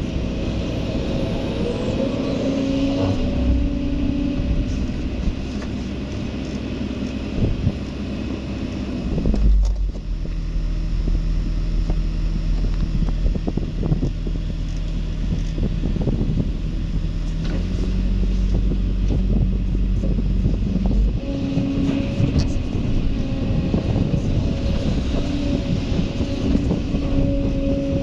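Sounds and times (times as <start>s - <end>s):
excavator diesel engine under load: 0.0s - 28.0s.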